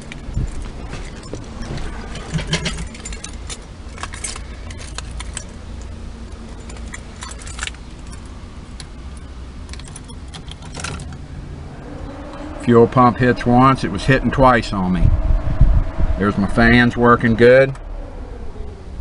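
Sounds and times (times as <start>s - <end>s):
small clicks and rattles: 0.0s - 11.2s
car keys jangling: 0.0s - 11.3s
steady low rumble: 0.0s - 19.0s.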